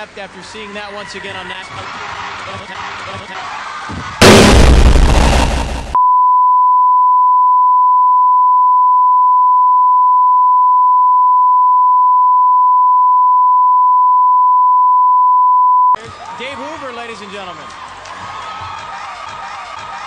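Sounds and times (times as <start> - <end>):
loud noisy blast: 4.2 - 6.0.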